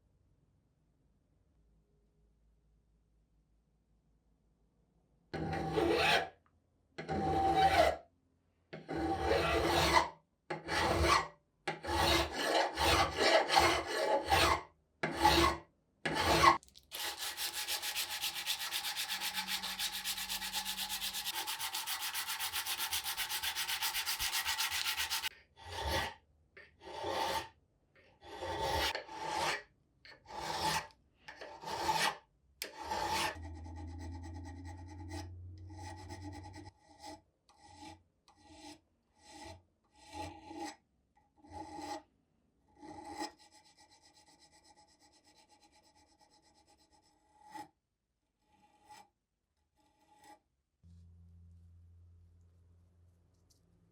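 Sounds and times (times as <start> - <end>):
hand file rasping: 8.8 - 26.1, 28.2 - 29.6, 30.2 - 40.8.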